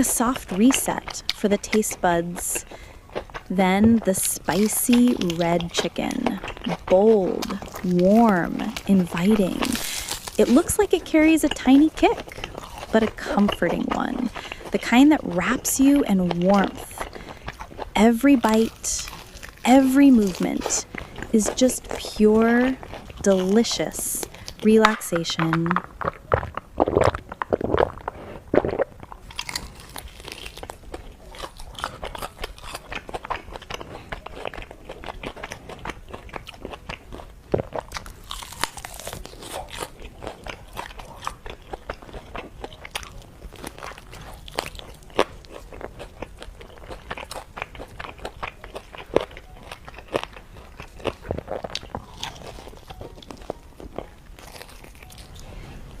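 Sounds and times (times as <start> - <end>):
crackling chewing: 0.0 - 56.0
crunchy bites of fried chicken: 9.5 - 10.4, 12.1 - 13.0, 25.6 - 55.3.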